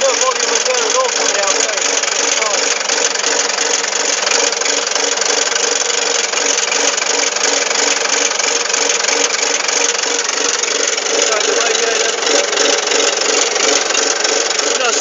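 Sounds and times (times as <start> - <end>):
bulldozer diesel engine running: 0.0 - 15.0.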